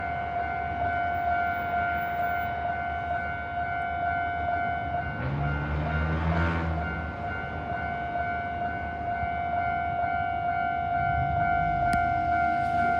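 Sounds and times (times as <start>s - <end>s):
level crossing warning bell: 0.0s - 12.9s
train rumble: 4.5s - 12.9s.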